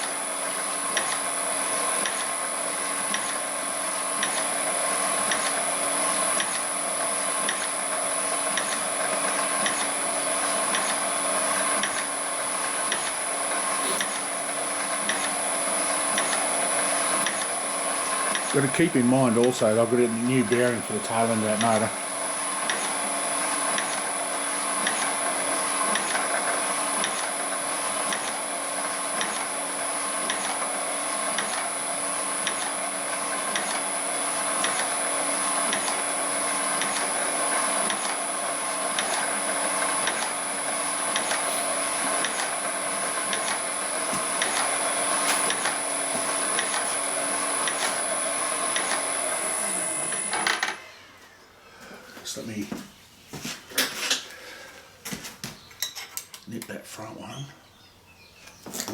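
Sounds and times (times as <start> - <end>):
crusher machine running: 0.0 - 50.9
repeating mechanical click: 5.2 - 5.6.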